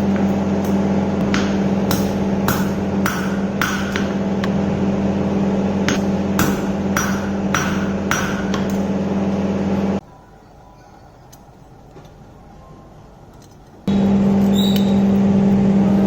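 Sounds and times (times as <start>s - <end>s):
hammer striking steel: 0.0s - 4.7s, 5.8s - 9.1s
low machine hum: 0.0s - 16.0s.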